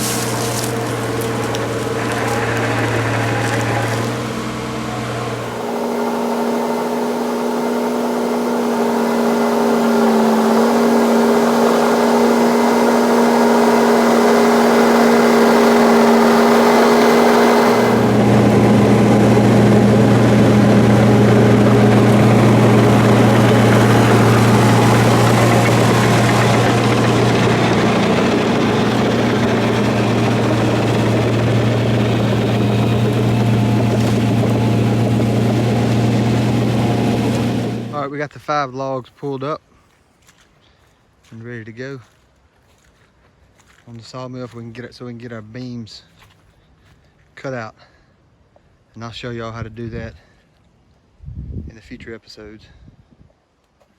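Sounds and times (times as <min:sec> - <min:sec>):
bulldozer diesel engine running: 0:00.0 - 0:38.1.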